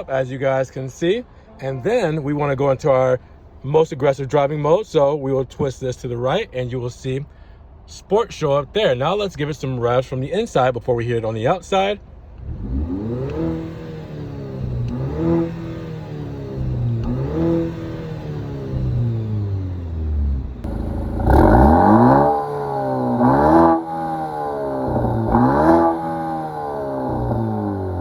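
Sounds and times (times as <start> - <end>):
car engine revving: 12.4 - 28.0.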